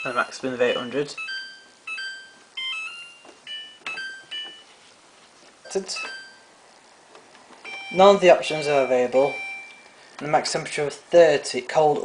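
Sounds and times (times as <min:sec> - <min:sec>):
washing machine panel beeps: 0:00.0 - 0:04.6, 0:06.0 - 0:06.5, 0:07.7 - 0:09.8.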